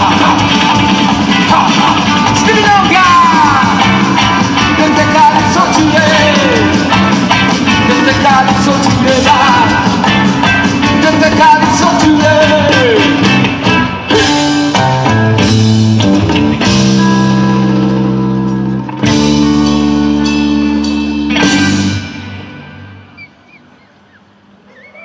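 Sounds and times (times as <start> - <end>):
ska rock band playing live: 0.0 - 23.6
person singing or shouting: 1.4 - 3.9.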